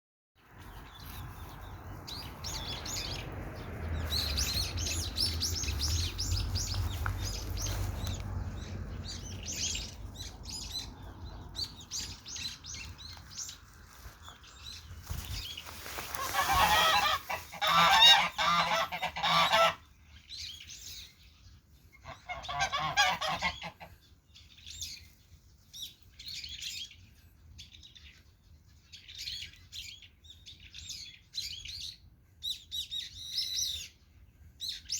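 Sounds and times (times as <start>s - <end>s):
small birds chirping: 0.4s - 34.9s
low rumble: 1.3s - 13.2s
geese honking: 16.0s - 19.9s, 22.0s - 23.9s.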